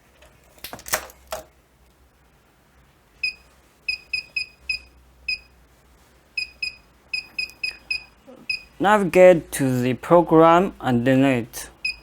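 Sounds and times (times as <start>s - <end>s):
keypad beeping: 3.2s - 5.5s, 6.4s - 8.7s, 11.8s - 12.0s.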